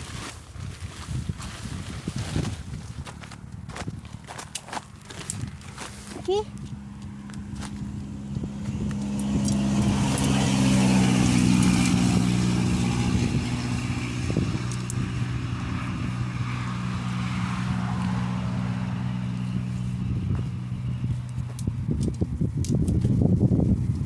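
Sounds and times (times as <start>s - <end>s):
low engine hum: 1.2s - 24.0s
vehicle passing: 3.1s - 22.3s.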